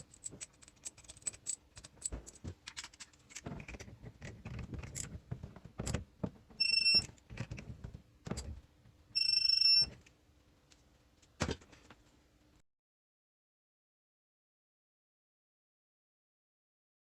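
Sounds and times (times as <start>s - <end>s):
scattered clicks and knocks: 0.0s - 8.6s
faint steady hum: 0.0s - 12.6s
electronic beeps: 6.6s - 7.1s.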